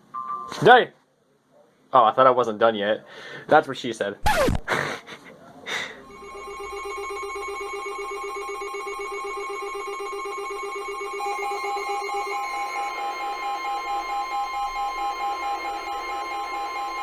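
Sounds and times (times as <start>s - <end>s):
electronic alert tones: 6.0s - 17.0s.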